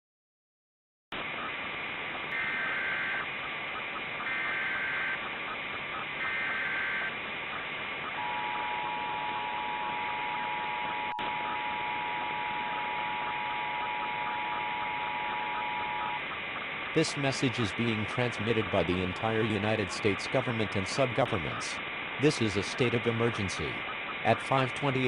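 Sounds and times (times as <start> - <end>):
static hiss: 1.2 - 25.0
warbling data tone bursts: 1.4 - 25.0
two-tone attention signal: 8.1 - 16.3.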